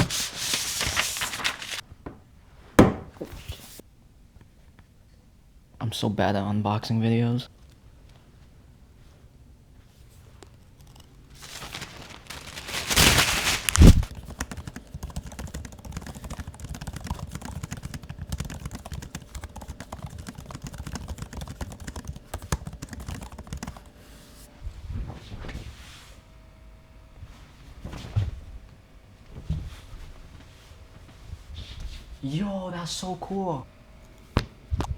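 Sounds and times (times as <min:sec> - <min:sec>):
packaging rustling with clicks: 0:00.0 - 0:01.8, 0:10.4 - 0:23.8.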